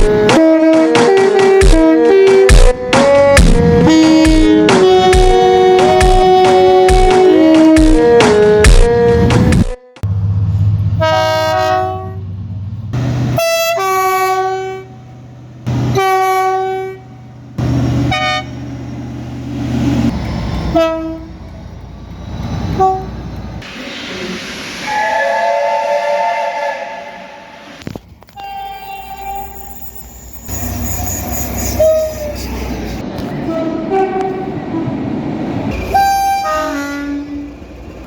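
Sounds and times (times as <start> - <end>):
train horn blasts: 0.0 - 10.1, 11.0 - 12.3, 13.3 - 17.3, 18.0 - 18.6, 20.7 - 21.3, 22.7 - 23.2, 24.9 - 27.6, 28.3 - 32.5, 33.4 - 34.7, 35.7 - 37.6.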